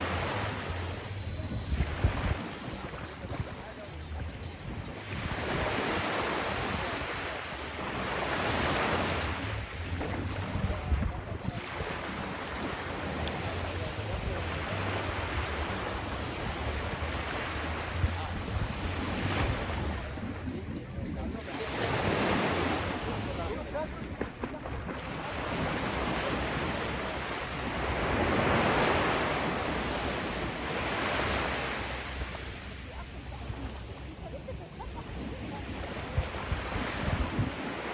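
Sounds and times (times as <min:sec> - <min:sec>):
ocean waves on beach: 0:00.0 - 0:37.9
wind rumble on microphone: 0:00.0 - 0:37.9
wind buffeting microphone: 0:15.6 - 0:21.5, 0:32.9 - 0:37.9
ocean surf washing onto beach: 0:21.5 - 0:37.9.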